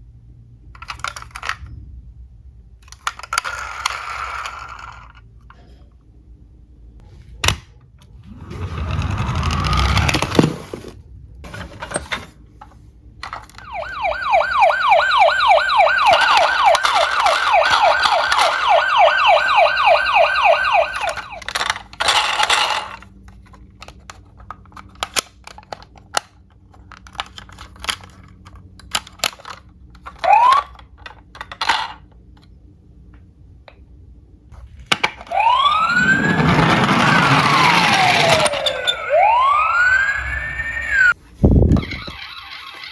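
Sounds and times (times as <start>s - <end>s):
electronic siren yelping: 13.6s - 21.6s, 30.3s - 30.6s, 35.3s - 41.2s, 41.8s - 42.9s
short rising siren chirp: 13.6s - 21.6s, 35.3s - 41.2s.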